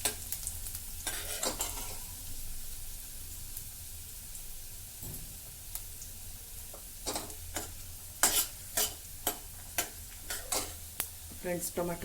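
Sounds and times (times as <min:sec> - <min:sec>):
garlic sizzling in hot oil: 0:00.0 - 0:12.0
utensil scraping pan: 0:01.0 - 0:02.1, 0:07.1 - 0:10.8.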